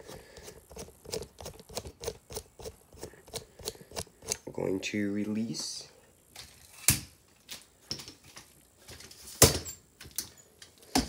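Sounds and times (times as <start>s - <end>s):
computer hardware clicks and knocks: 0.4s - 4.4s.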